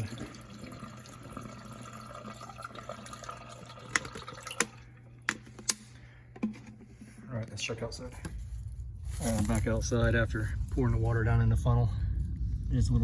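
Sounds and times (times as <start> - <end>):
water trickling down a drain pipe: 0.0 - 5.0.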